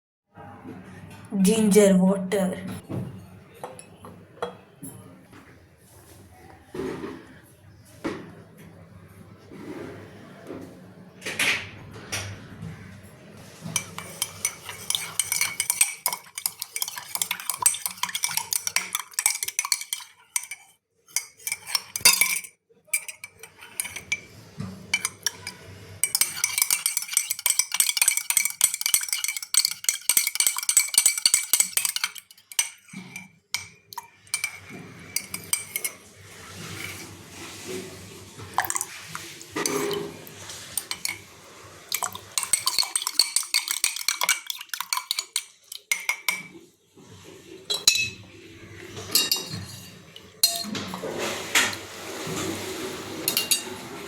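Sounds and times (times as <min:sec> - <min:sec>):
metal spoon clinking on vessel: 0:13.8 - 0:36.0, 0:40.8 - 0:41.2, 0:41.9 - 0:46.5, 0:47.7 - 0:48.2, 0:49.1 - 0:50.8, 0:53.3 - 0:53.6.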